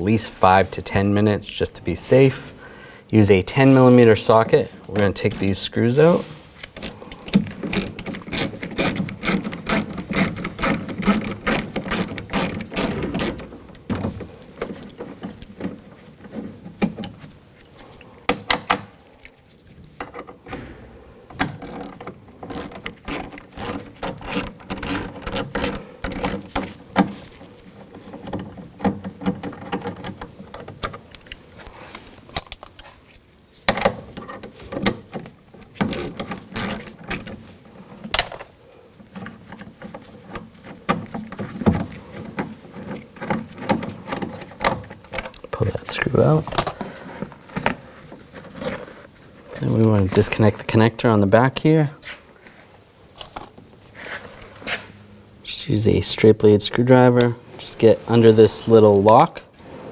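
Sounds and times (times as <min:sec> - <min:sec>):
hand ratchet clicking: 0:06.8 - 0:13.5, 0:21.4 - 0:26.6, 0:35.9 - 0:37.3.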